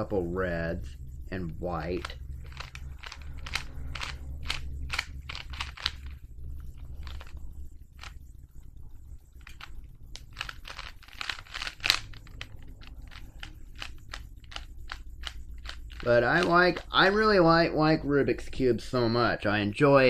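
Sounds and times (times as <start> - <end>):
plastic puzzle cube clicking: 2.0 - 6.2, 7.0 - 7.4, 9.4 - 17.0.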